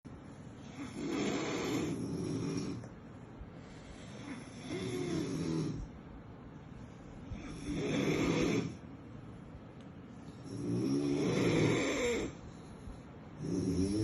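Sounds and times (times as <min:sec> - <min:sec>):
puppy snoring: 0:00.6 - 0:02.9, 0:04.0 - 0:05.9, 0:07.3 - 0:08.8, 0:10.4 - 0:14.0.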